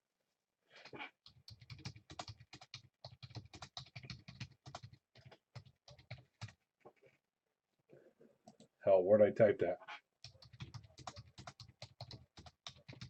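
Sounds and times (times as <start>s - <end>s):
faint keyboard typing: 0.8s - 7.2s, 10.2s - 13.0s.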